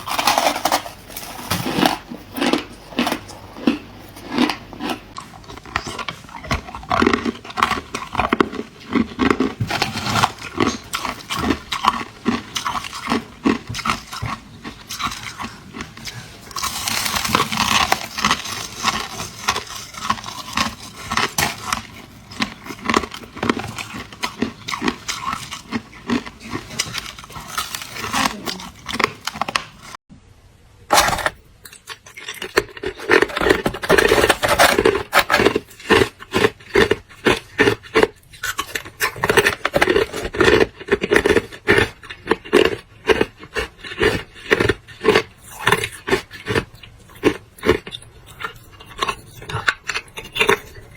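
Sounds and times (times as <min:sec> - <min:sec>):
ice being crunched: 0:00.0 - 0:05.0, 0:16.5 - 0:29.9, 0:30.9 - 0:48.0.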